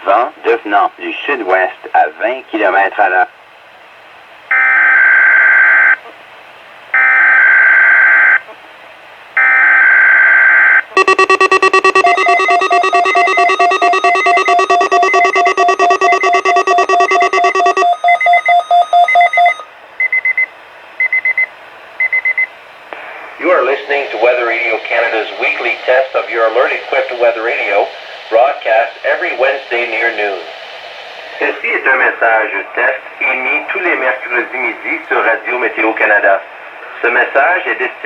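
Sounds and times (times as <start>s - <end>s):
steady alarm tones: 10.9s - 19.6s
digital alert data bursts: 11.0s - 19.6s
rapid electronic beeping: 11.0s - 19.6s.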